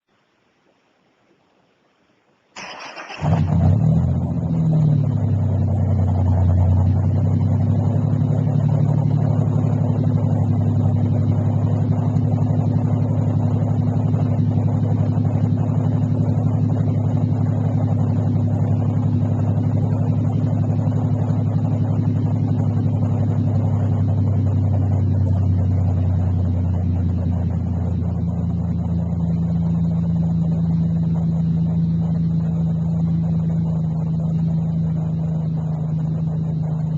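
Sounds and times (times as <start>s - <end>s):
engine starting and idling: 2.6s - 29.1s.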